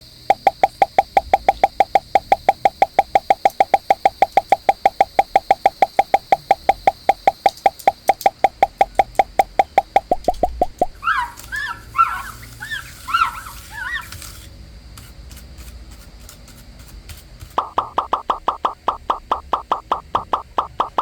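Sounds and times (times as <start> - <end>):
mechanical keyboard keys clacking: 0.3 - 11.0.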